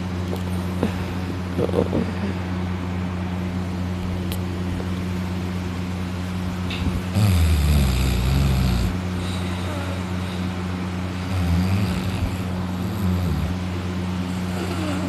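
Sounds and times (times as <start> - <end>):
steady low hum: 0.0 - 15.0
man snoring: 7.1 - 10.5, 11.1 - 13.7, 14.3 - 15.0.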